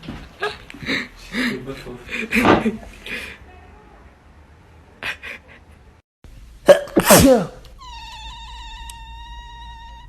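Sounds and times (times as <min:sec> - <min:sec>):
person sneezing: 0:06.7 - 0:07.6
cat meowing: 0:07.8 - 0:10.0.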